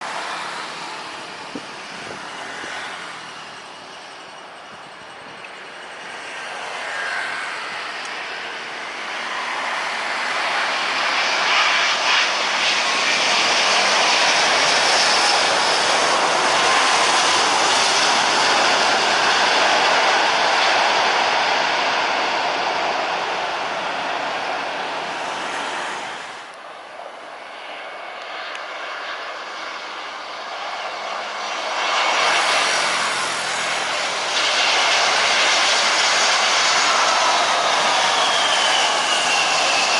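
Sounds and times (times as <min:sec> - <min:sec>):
jet engines roaring past: 0:00.0 - 0:39.9.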